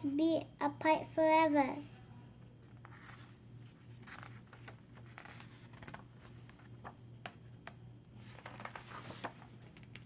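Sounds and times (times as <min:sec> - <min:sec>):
low steady hum: 0:00.0 - 0:10.0
picture book pages turning: 0:02.6 - 0:10.0.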